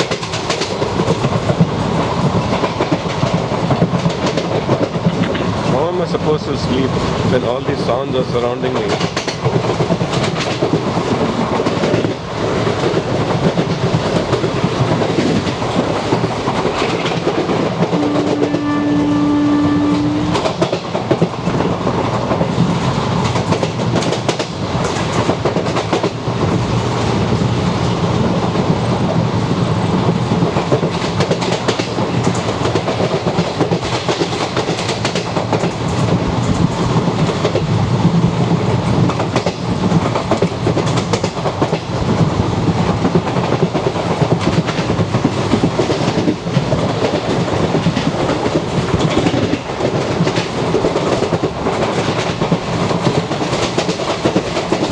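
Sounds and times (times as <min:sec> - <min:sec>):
train running on rails: 0:00.0 - 0:54.9
locomotive horn blast: 0:17.9 - 0:20.7.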